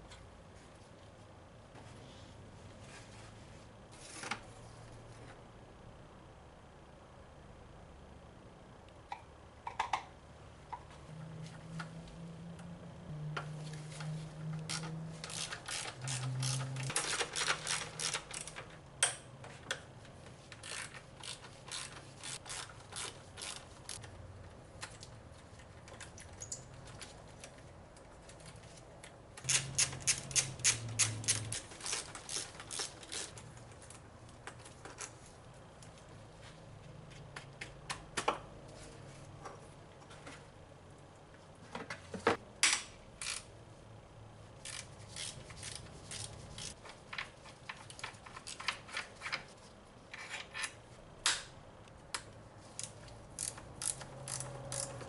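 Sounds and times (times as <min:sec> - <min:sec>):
socket ratchet clicking: 0:52.8 - 0:55.0.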